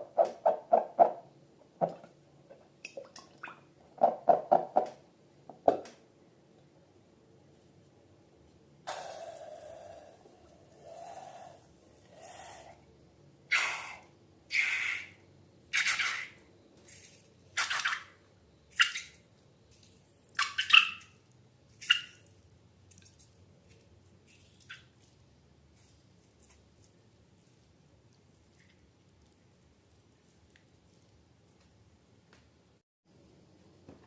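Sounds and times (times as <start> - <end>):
slime squelching by hand: 21.7 - 31.8.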